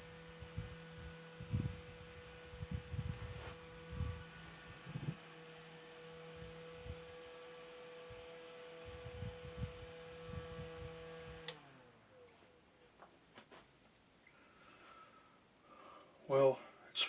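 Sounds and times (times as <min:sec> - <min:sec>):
desk fan motor humming: 0:00.0 - 0:12.4
fan switch click: 0:11.4 - 0:11.6.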